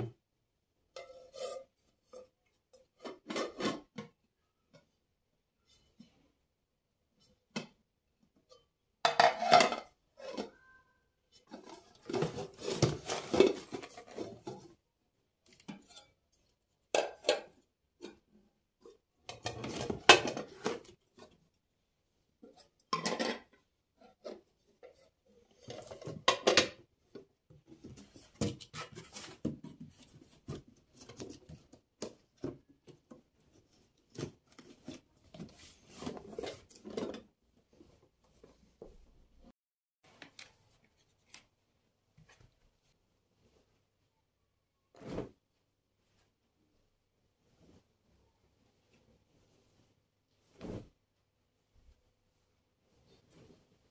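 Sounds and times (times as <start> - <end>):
dishes and cutlery clattering: 9.1 - 10.6, 22.9 - 23.6, 25.6 - 26.8.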